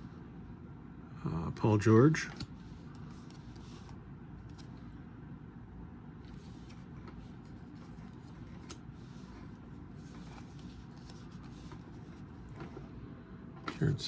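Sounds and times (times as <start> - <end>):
steady low hum: 0.0 - 14.0
cards being flipped: 2.3 - 4.8, 6.2 - 12.4.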